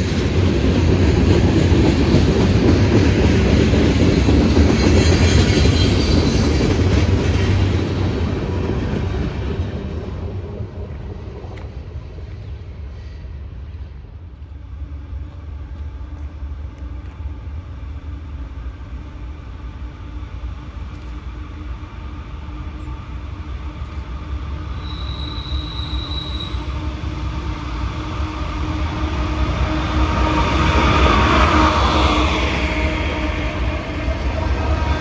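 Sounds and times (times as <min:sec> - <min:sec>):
train rumble: 0:00.0 - 0:35.0
brief high squeal: 0:24.7 - 0:26.8.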